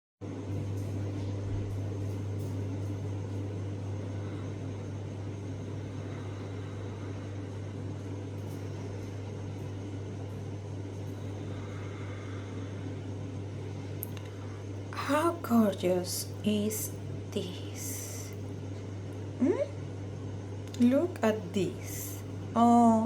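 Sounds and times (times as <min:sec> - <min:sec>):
steady low hum: 0:00.2 - 0:23.0.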